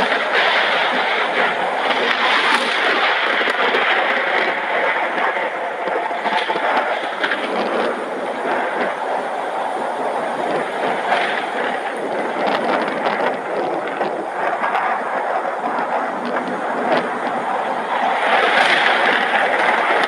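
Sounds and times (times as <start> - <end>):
heavy rain pouring: 0.0 - 20.0.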